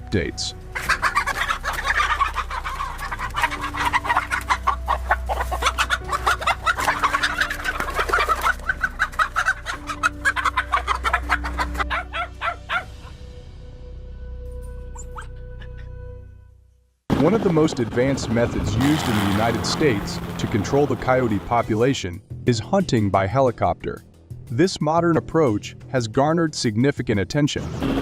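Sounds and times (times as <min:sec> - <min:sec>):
chickens clucking: 0:00.7 - 0:12.9.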